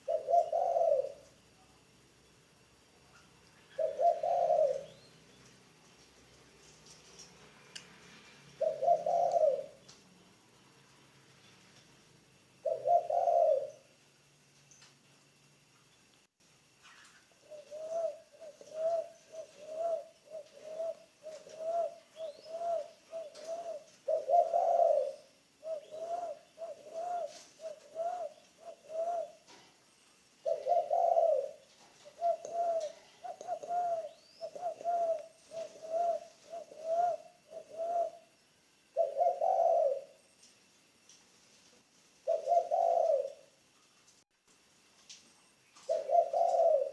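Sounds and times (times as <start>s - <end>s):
dove cooing: 0.0s - 1.4s, 3.6s - 5.3s, 8.1s - 9.9s, 12.6s - 13.9s, 17.3s - 29.8s, 30.4s - 40.2s, 42.2s - 43.6s, 45.8s - 46.9s.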